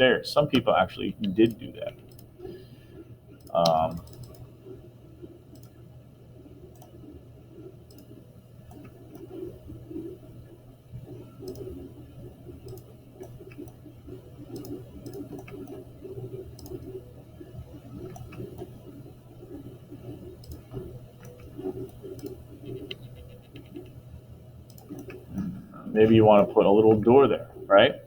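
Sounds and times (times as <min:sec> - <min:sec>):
steady low hum: 0:00.0 - 0:28.0
computer mouse clicks: 0:01.2 - 0:02.4, 0:03.4 - 0:04.5, 0:05.5 - 0:05.8, 0:06.7 - 0:07.1, 0:07.8 - 0:10.2, 0:11.0 - 0:11.9, 0:12.5 - 0:24.0, 0:24.7 - 0:25.5.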